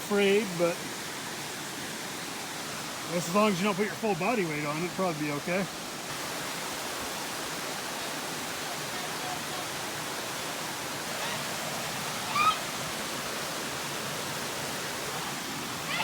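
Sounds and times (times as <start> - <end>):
small waterfall rushing: 0.0 - 16.0.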